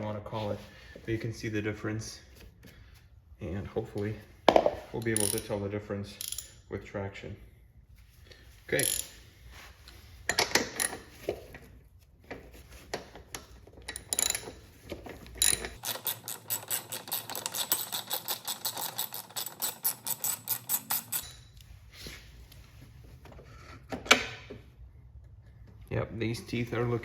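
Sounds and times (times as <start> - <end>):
metal tools clicking and knocking: 4.5 - 5.5, 6.2 - 6.6, 10.3 - 11.1, 13.3 - 21.6
rapid ratchet clicking: 15.4 - 21.3.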